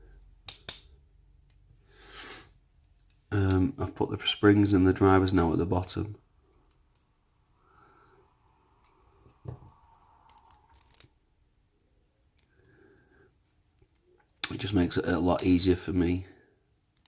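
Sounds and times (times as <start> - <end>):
small lock parts clicking: 0.4 - 1.6.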